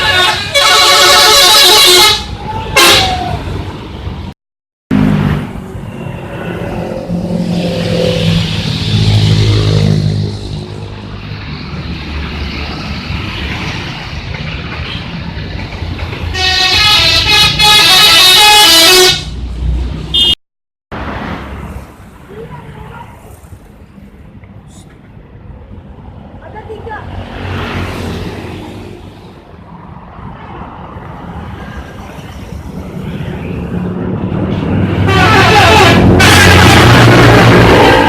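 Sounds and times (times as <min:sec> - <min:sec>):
musical bus horn: 0:00.0 - 0:03.4, 0:16.2 - 0:19.5, 0:20.1 - 0:20.4, 0:34.8 - 0:38.0.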